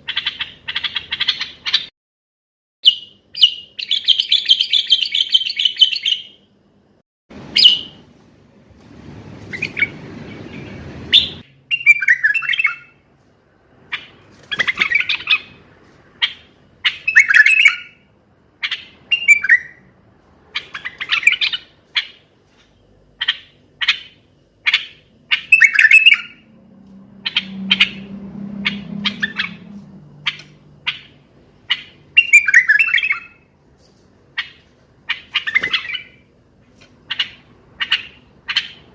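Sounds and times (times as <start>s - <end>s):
low rumbling noise: 7.3s - 11.4s.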